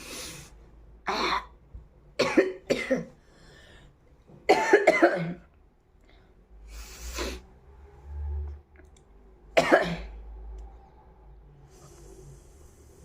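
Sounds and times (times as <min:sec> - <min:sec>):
woman coughing: 0:02.2 - 0:03.1, 0:04.5 - 0:05.4, 0:09.6 - 0:10.1.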